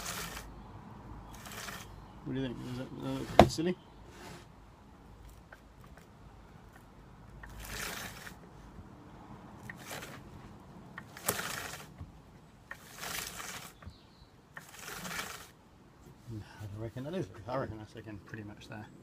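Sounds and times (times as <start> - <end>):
metal scrapes of chainsaw bar: 0.0 - 0.5, 1.3 - 3.5, 7.4 - 8.4, 9.6 - 10.2, 11.0 - 12.0, 12.7 - 13.9, 14.6 - 15.6.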